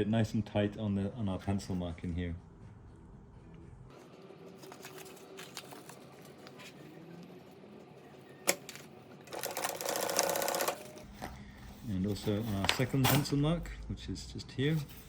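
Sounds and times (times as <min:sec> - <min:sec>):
sewing machine stitching: 0:09.3 - 0:11.0.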